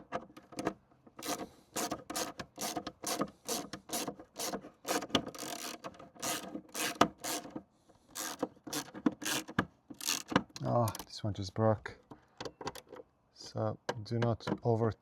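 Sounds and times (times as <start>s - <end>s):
screwdriver ratcheting clicks: 1.2s - 11.1s.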